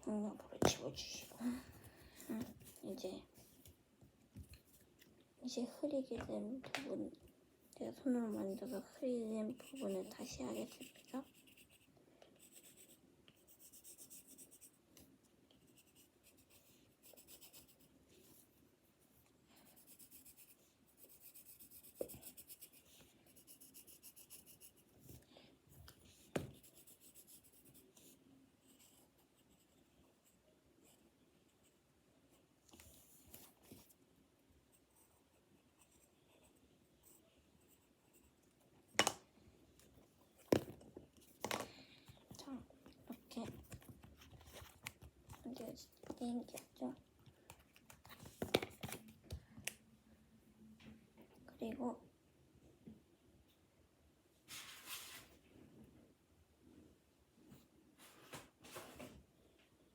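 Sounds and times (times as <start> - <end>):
pen scratching on paper: 8.1 - 14.8, 15.6 - 18.4, 19.6 - 24.9, 26.0 - 31.0.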